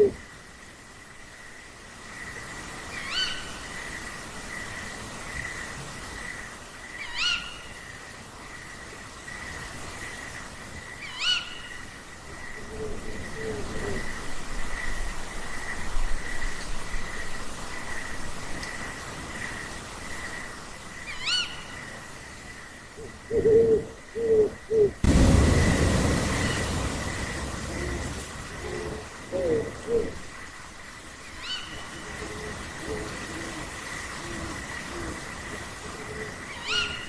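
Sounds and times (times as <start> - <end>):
owl low hoots: 0.0 - 0.2, 12.6 - 14.1, 23.0 - 25.0, 27.6 - 30.2, 31.4 - 35.2
owl shrill calls: 7.0 - 7.6, 11.0 - 11.6.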